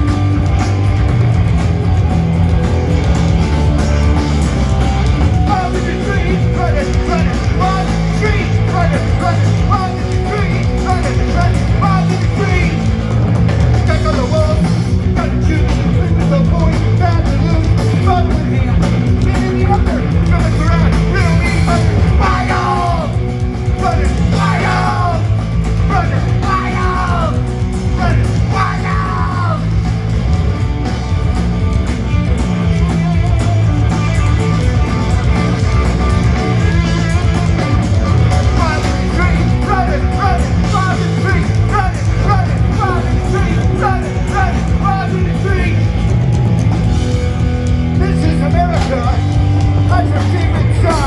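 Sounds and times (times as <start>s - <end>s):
electric guitars: 0.0s - 51.0s
quick repeated lead guitar notes: 0.0s - 51.0s
steady low bass line: 0.0s - 51.0s
person singing or yelling: 5.2s - 13.0s, 13.8s - 29.9s, 36.2s - 46.0s.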